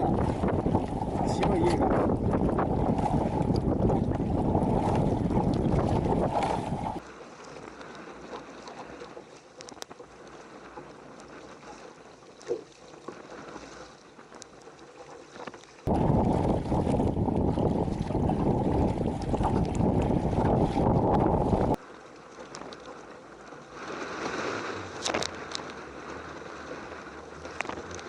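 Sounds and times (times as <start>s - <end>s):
wind buffeting microphone: 0.0s - 7.0s, 15.9s - 21.8s
faint ticks: 9.6s - 10.0s.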